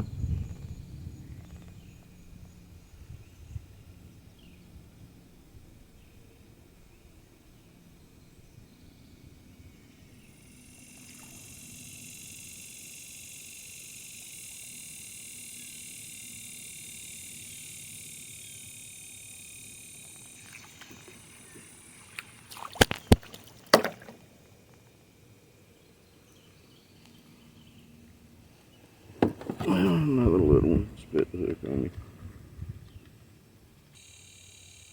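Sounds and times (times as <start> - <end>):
high steady buzz: 10.2 - 22.2, 34.0 - 34.9
knocks and clatters on kayak: 22.5 - 24.2, 29.1 - 29.9.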